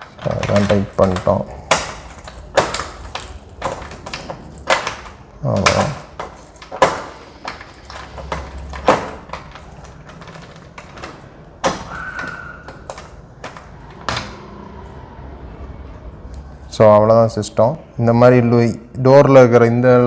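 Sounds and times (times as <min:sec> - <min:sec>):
lock mechanism clicking: 0:00.0 - 0:14.4
keys jangling on a ring: 0:00.0 - 0:15.0.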